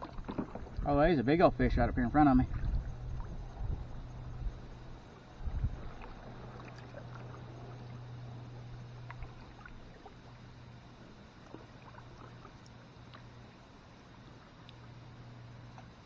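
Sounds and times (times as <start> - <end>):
paddle splashing water: 0.0 - 1.2, 2.2 - 13.6
low steady hum: 0.0 - 16.0.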